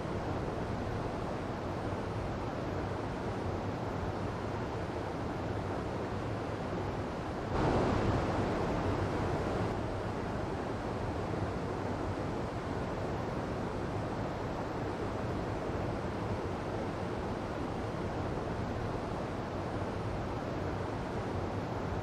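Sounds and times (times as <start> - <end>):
waterfall and stream rushing: 7.4 - 11.7.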